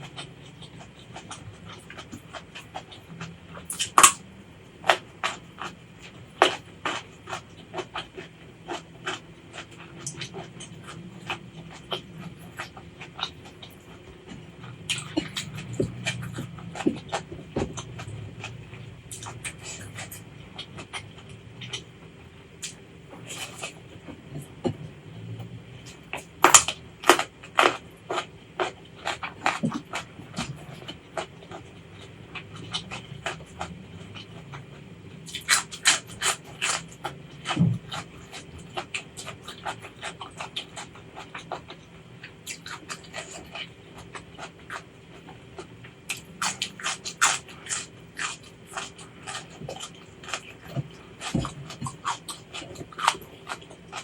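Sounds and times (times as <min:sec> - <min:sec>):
person chewing with wet smacking: 0:00.0 - 0:54.0
crisp crunching: 0:35.3 - 0:41.8, 0:42.5 - 0:54.0.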